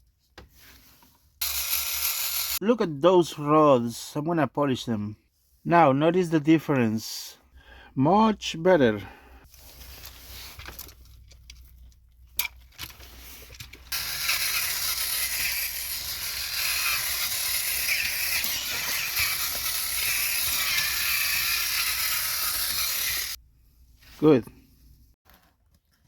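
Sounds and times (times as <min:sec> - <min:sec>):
toy engine motor whirring: 0:01.4 - 0:02.6, 0:13.9 - 0:23.4.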